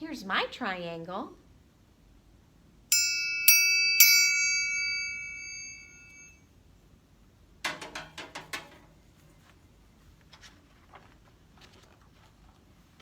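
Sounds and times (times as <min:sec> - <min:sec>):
metal triangle ringing: 0:02.9 - 0:06.4
sharp clicks and knocks: 0:07.7 - 0:09.0.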